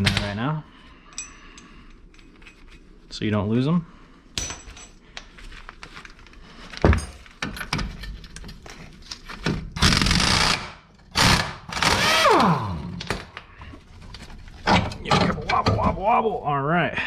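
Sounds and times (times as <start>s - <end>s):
metal tools and bolts clinking: 1.0s - 3.1s, 4.4s - 5.4s, 6.8s - 9.3s.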